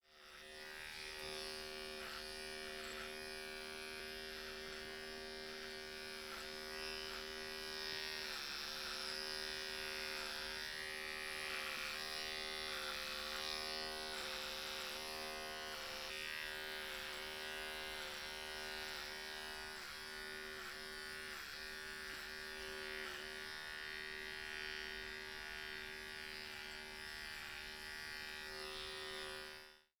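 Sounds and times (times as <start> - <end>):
electric beard trimmer buzzing: 0.0 - 29.9.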